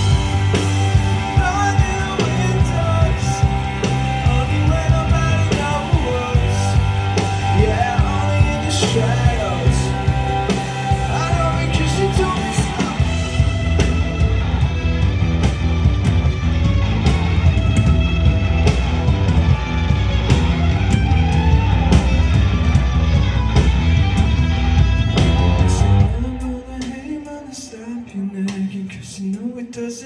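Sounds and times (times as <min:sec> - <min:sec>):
rock band playing: 0:00.0 - 0:28.8.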